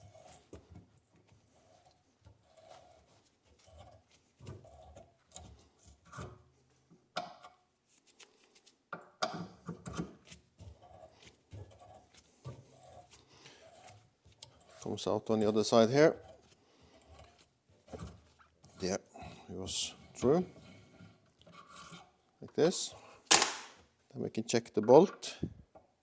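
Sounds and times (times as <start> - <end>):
hand reamer scraping metal: 0.0 - 6.3, 9.4 - 23.2.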